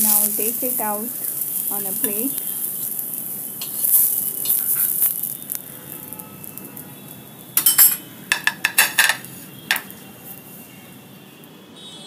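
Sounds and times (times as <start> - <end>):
oil sizzling on a hot pan: 0.0 - 11.1
utensil clinking against dishes: 7.6 - 9.9.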